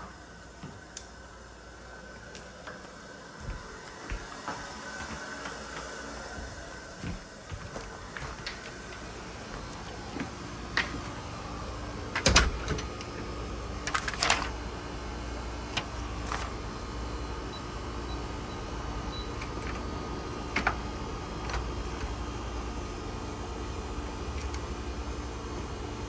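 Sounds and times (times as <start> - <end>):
door clicks and knocks: 12.2 - 12.9.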